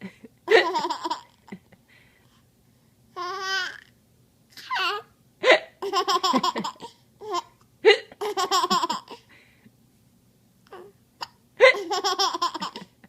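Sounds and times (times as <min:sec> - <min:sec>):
child giggling: 0:00.5 - 0:01.7, 0:11.6 - 0:13.0.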